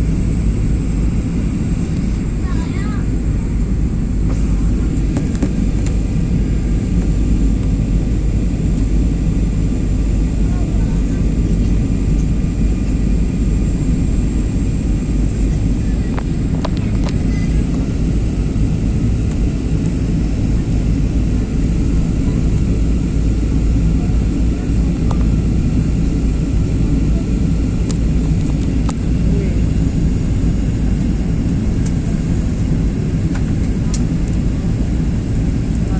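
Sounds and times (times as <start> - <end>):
airplane rumble: 0.0 - 35.9.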